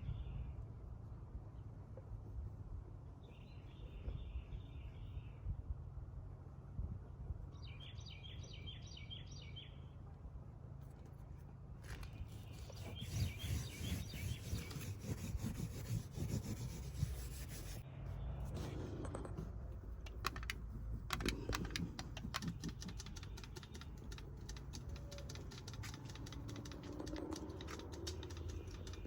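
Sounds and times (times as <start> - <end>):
grainy rubbing and rustling: 11.8 - 17.8
birds chirping: 11.9 - 17.8, 21.2 - 29.0.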